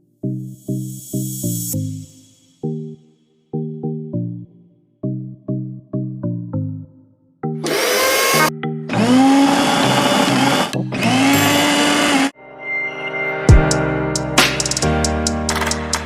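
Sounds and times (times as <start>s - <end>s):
background music: 0.0s - 16.0s
mixer grinder motor whine: 7.6s - 12.3s.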